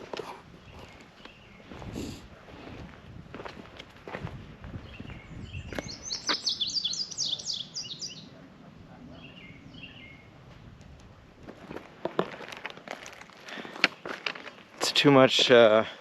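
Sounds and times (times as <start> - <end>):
footsteps on trail: 0.0 - 6.6, 11.4 - 15.9
songbird singing: 0.5 - 2.2, 4.7 - 10.4.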